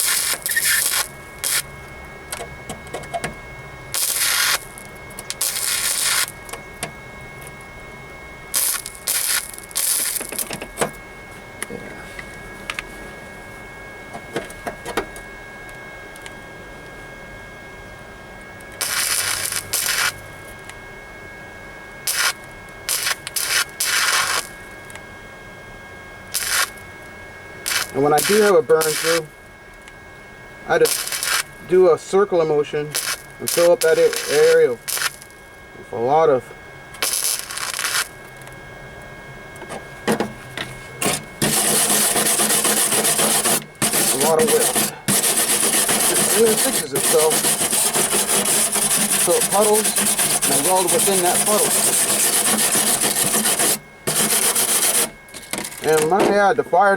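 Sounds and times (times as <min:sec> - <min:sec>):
welder arcing in bursts: 0:00.0 - 0:01.7, 0:03.9 - 0:06.5, 0:08.5 - 0:10.5, 0:18.8 - 0:20.2, 0:22.0 - 0:24.6, 0:26.3 - 0:26.9, 0:27.6 - 0:29.3, 0:30.7 - 0:32.0, 0:32.6 - 0:35.4, 0:37.0 - 0:38.4, 0:41.0 - 0:56.1.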